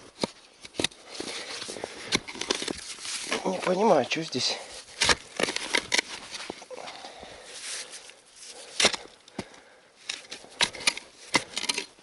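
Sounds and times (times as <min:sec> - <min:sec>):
spade scraping: 0:00.0 - 0:06.7, 0:10.1 - 0:12.0
spade chopping into ground: 0:08.8 - 0:09.1, 0:10.2 - 0:11.9.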